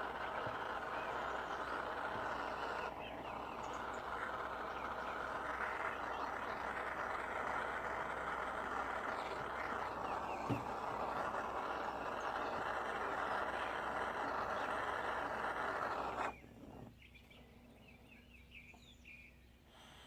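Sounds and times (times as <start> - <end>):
torch flame roaring: 0.0 - 16.8.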